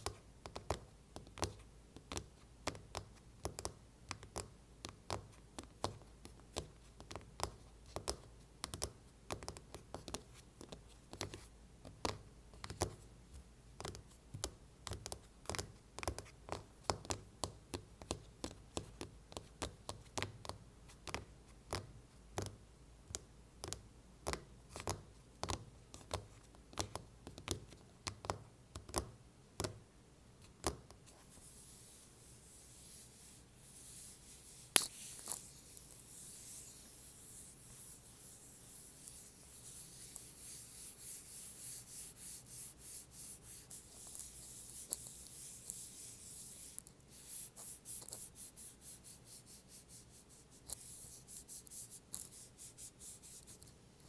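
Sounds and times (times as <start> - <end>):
soft scratching hiss: 30.4 - 54.0.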